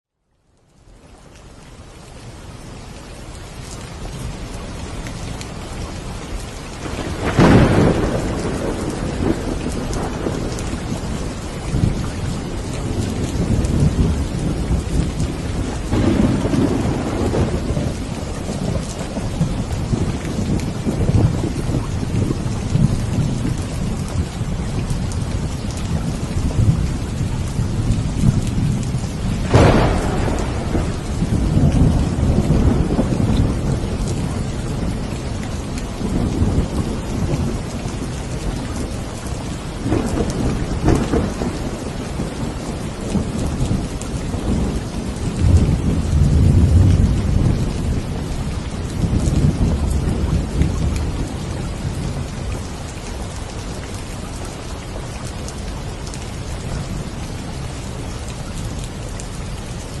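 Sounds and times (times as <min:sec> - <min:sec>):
steady rain: 0:00.1 - 1:00.0
low thunder rumbles: 0:06.0 - 1:00.0
thunder cracks: 0:06.8 - 0:11.9, 0:12.9 - 0:23.4, 0:29.0 - 0:34.6, 0:39.8 - 0:47.7.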